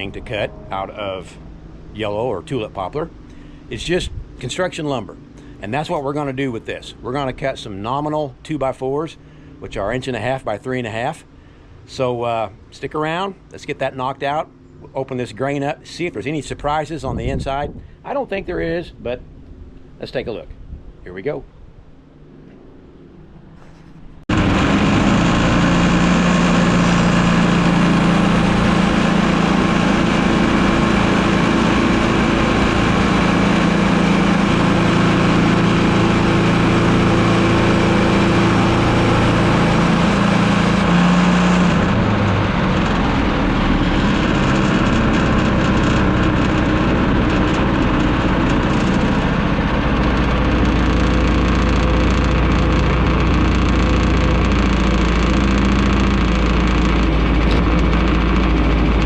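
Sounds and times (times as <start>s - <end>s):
bandsaw mill cutting wood: 0.0s - 1.4s, 24.3s - 59.0s
gas engine under load: 0.0s - 59.0s.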